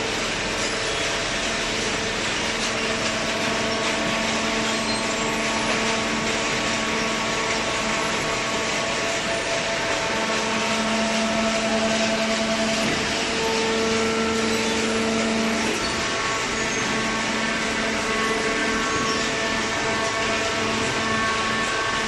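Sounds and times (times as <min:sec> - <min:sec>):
hydraulic whine: 0:00.0 - 0:22.0.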